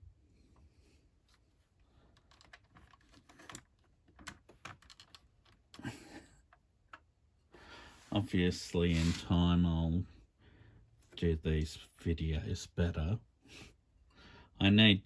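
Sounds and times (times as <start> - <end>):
brief rustle: 8.9 - 9.3.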